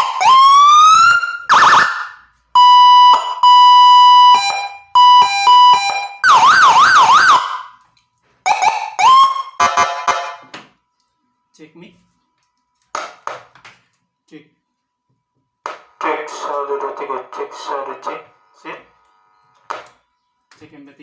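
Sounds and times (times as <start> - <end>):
electronic siren tones: 0.0 - 7.8, 8.4 - 10.5.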